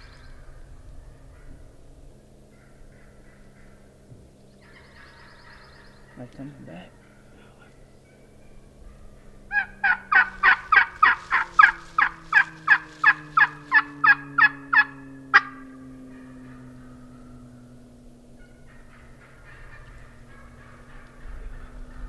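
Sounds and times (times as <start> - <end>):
faint low drone: 0.0 - 22.0
turkey yelps: 4.6 - 17.6, 18.3 - 22.0.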